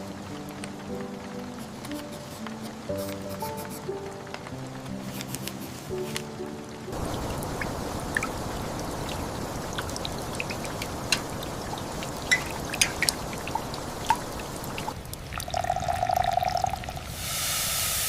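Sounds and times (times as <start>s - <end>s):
steady rain: 0.0s - 18.0s
water pouring and trickling: 5.2s - 18.0s
sharp drips: 6.9s - 17.1s.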